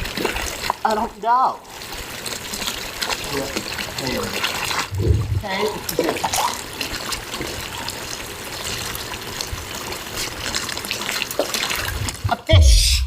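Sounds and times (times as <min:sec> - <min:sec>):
running water rushing: 0:00.0 - 0:12.7
loud low thump: 0:04.9 - 0:05.4
low rumble: 0:04.9 - 0:05.5.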